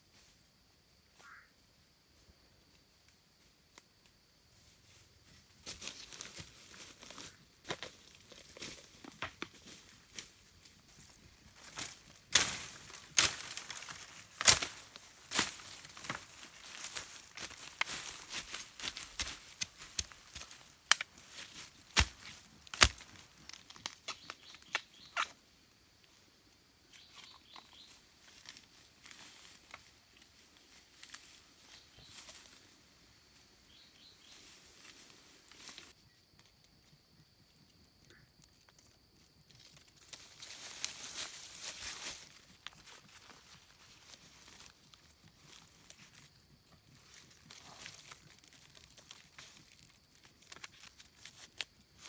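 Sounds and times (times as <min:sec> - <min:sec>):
dry material crackling and tearing: 0:12.3 - 0:25.3.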